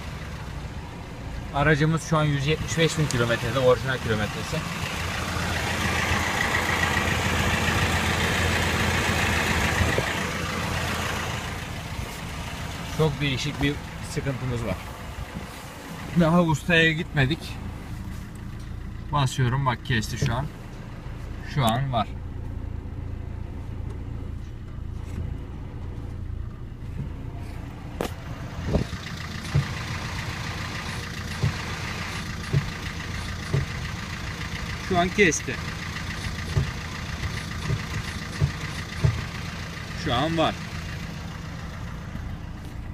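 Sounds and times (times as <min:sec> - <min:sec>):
diesel engine idling: 0:00.0 - 0:42.9
rushing rattle: 0:26.9 - 0:42.1
short knocks: 0:28.0 - 0:30.0, 0:32.4 - 0:33.8, 0:37.6 - 0:39.3.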